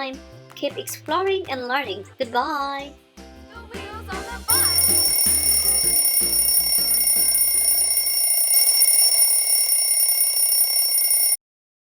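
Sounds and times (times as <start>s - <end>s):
buzzy high-pitched ringing: 4.5s - 11.4s.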